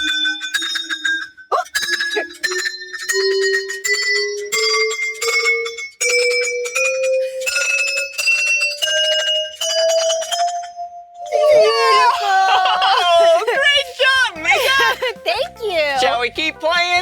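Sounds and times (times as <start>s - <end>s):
tuned metal bars struck: 0.0s - 11.7s.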